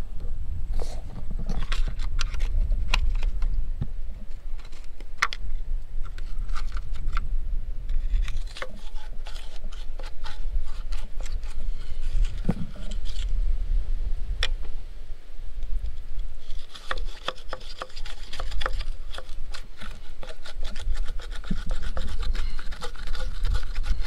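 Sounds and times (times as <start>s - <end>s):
steady low rumble: 0.0s - 16.4s.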